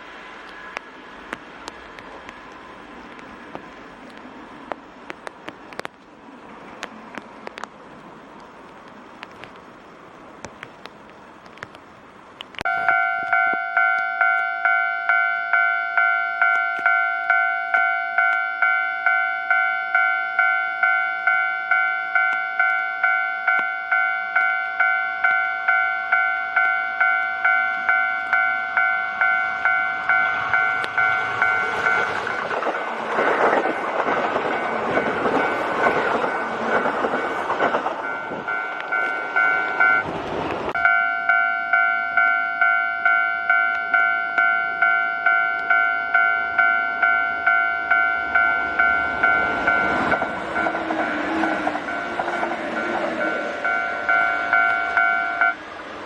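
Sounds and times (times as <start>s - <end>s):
train rumble and wheel clatter: 0.0s - 56.0s
level crossing bell dinging: 12.7s - 32.1s, 38.0s - 40.0s, 40.8s - 50.9s, 51.8s - 55.6s.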